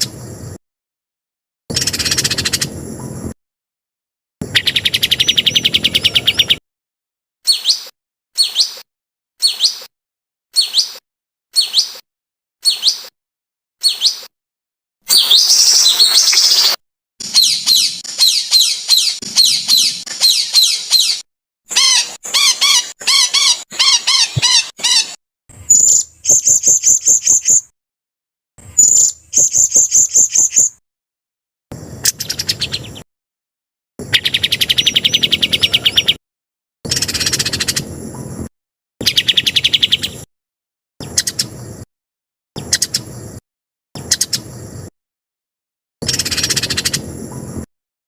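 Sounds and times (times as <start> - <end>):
bird chattering: 1.7 - 2.7, 4.4 - 6.6, 7.5 - 8.8, 9.4 - 9.8, 10.6 - 11.0, 11.6 - 12.0, 12.6 - 13.1, 15.1 - 27.6, 28.8 - 30.8, 32.0 - 33.0, 34.0 - 36.2, 36.9 - 37.9, 41.0 - 41.5, 42.6 - 43.0, 44.0 - 44.4, 46.0 - 47.0
songbird calls: 1.7 - 2.7, 4.4 - 6.6, 7.5 - 9.9, 10.6 - 11.0, 11.6 - 12.0, 12.6 - 13.1, 13.8 - 14.3, 15.1 - 27.7, 28.7 - 30.8, 32.0 - 33.0, 34.0 - 36.2, 36.9 - 37.8, 39.0 - 40.3, 41.0 - 41.6, 42.6 - 43.1, 44.0 - 44.6, 46.0 - 47.4
high bird trills: 1.7 - 2.8, 4.4 - 6.6, 7.5 - 9.9, 10.6 - 11.0, 11.6 - 12.0, 12.6 - 13.1, 13.8 - 14.3, 15.1 - 27.7, 28.8 - 30.8, 32.0 - 33.1, 34.0 - 36.2, 36.9 - 38.3, 42.6 - 43.0, 46.0 - 47.1.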